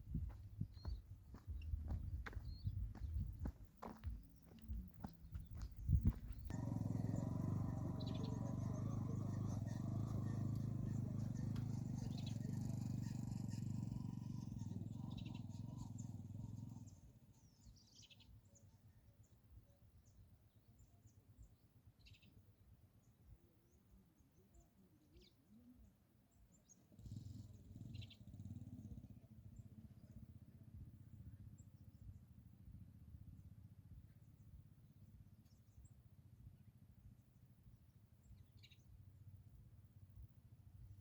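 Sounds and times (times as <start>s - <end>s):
steady low hum: 0.0s - 17.9s
birds chirping: 0.1s - 19.0s.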